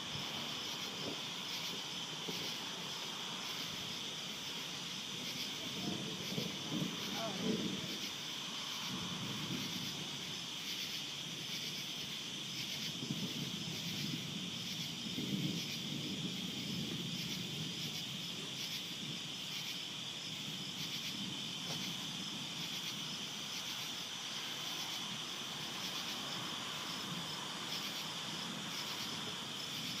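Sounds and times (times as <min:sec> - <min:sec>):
insects trilling: 0:00.0 - 0:30.0
pulsing insect chirp: 0:00.0 - 0:30.0.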